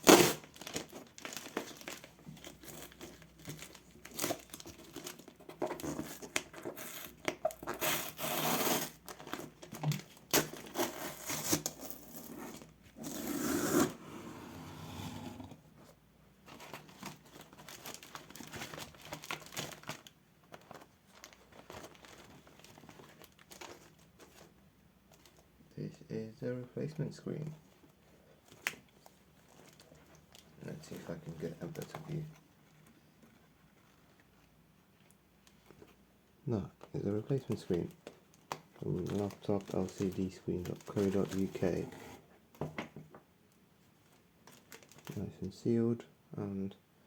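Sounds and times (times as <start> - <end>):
packaging crinkling and tearing: 0.0 - 13.3, 16.5 - 24.5, 28.4 - 34.5, 37.3 - 41.8, 44.0 - 45.2.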